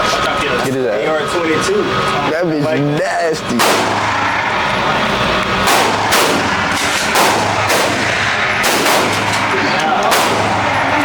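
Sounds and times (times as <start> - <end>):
gunshots with ringing echo: 3.6 - 4.3, 5.6 - 11.0.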